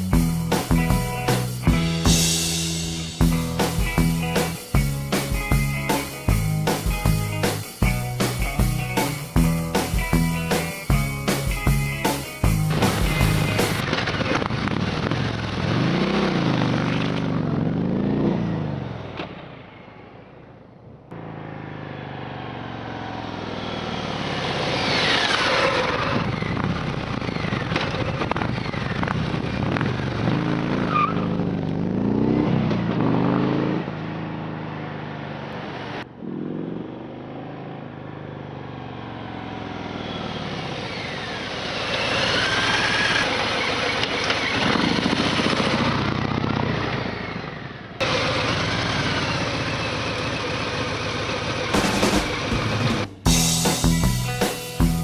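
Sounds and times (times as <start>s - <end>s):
motorcycle engine revving: 12.5s - 19.5s, 21.1s - 54.0s.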